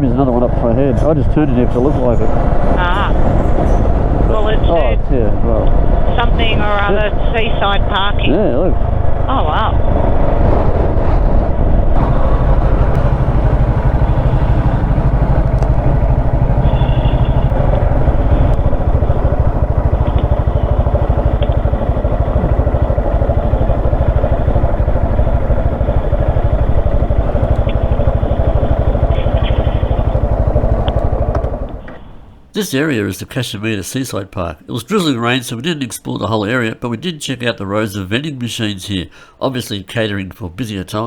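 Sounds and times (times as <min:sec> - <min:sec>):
motorcycle engine idling: 0:12.0 - 0:32.5.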